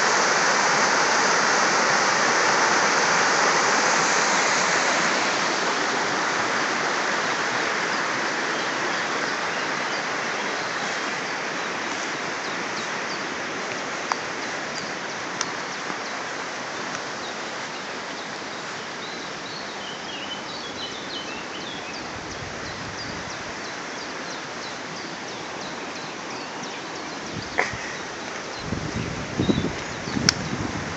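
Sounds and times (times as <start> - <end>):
campfire flames hissing: 0.0 - 8.3
birds chirping faintly: 7.6 - 30.7.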